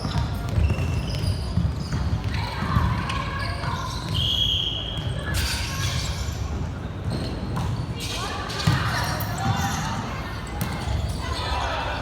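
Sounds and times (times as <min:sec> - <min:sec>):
players' voices: 0:08.6 - 0:12.0.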